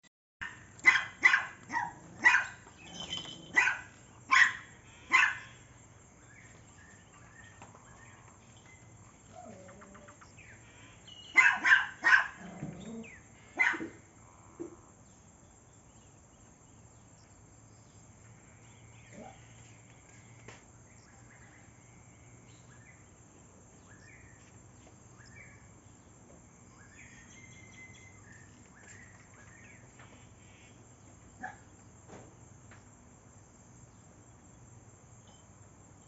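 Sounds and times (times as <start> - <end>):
dog barking: 0.4 - 5.6, 11.3 - 12.6, 13.6 - 14.0, 31.4 - 31.7.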